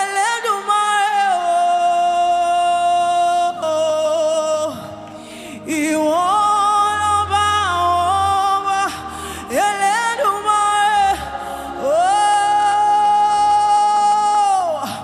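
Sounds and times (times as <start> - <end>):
person singing sustained notes: 0.0 - 15.0
soft backing music: 0.0 - 15.0
low bass note: 5.6 - 12.2.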